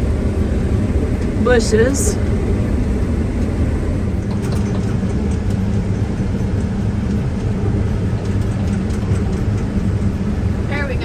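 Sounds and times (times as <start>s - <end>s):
combine harvester droning: 0.0s - 4.8s.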